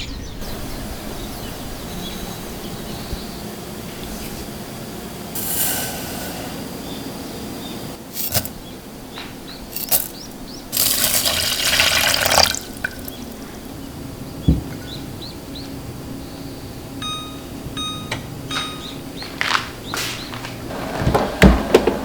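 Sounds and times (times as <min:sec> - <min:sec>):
tap running: 0:10.8 - 0:13.5
appliance beeps: 0:16.9 - 0:19.4.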